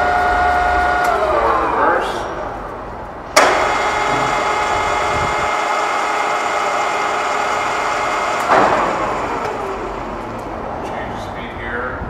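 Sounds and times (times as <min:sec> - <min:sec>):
drill gearbox whir and whine: 0:00.0 - 0:01.9, 0:03.4 - 0:10.5.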